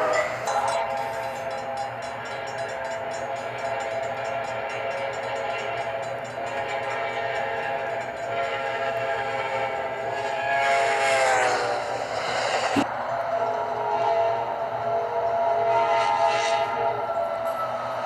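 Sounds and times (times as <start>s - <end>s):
locomotive air horn: 0.0s - 18.0s.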